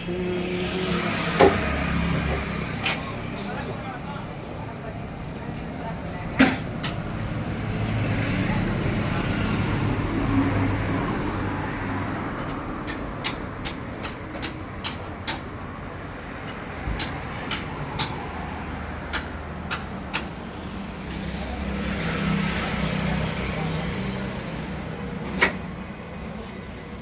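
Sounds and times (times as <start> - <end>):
steady background noise: 0.0 - 27.0.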